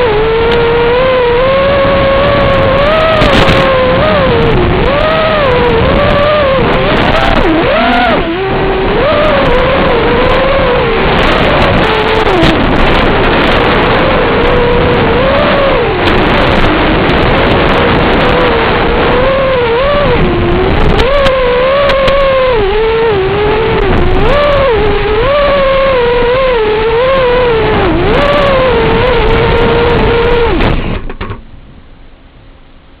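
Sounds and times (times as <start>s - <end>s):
drone motors whining: 0.0s - 31.0s
heavy wind noise: 0.0s - 33.0s.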